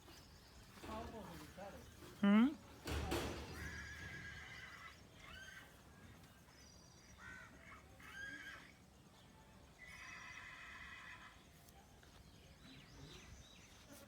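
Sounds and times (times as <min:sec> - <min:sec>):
horse whinnying: 0:03.6 - 0:05.6.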